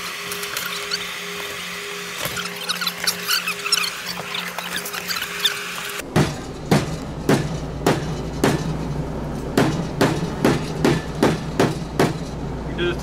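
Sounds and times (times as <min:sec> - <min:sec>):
sharp knocks: 0:06.0 - 0:12.4.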